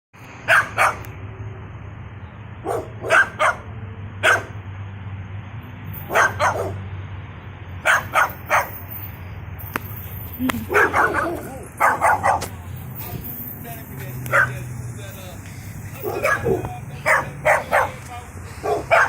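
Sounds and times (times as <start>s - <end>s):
dog barking: 0.5s - 1.1s, 2.6s - 4.6s, 6.1s - 6.8s, 7.8s - 8.8s, 10.6s - 12.5s, 14.3s - 14.6s, 16.0s - 18.0s, 18.6s - 19.0s.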